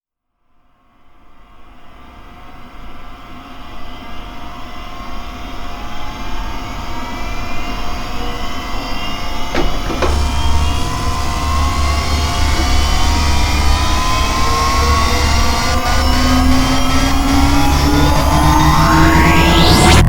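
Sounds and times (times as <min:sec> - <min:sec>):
layered rising whine: 0:05.5 - 0:20.0
deep rumble: 0:09.6 - 0:20.0.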